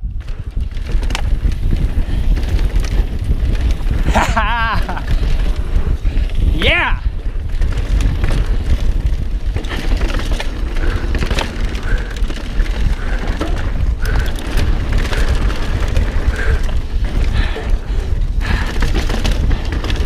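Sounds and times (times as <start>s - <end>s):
bike rattling over bumps: 0.0s - 20.0s
wind buffeting microphone: 0.0s - 20.0s.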